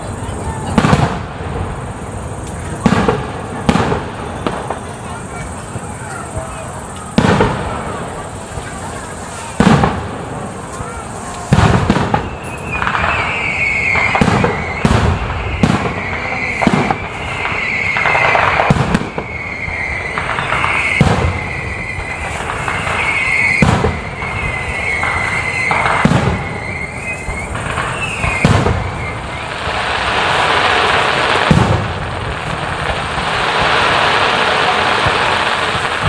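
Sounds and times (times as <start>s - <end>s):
fireworks bursting: 0.0s - 36.0s
high wavering whistle: 10.3s - 29.6s.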